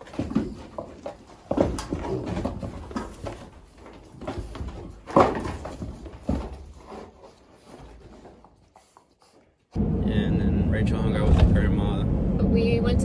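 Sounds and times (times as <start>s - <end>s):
pigs grunting: 0.0s - 9.6s.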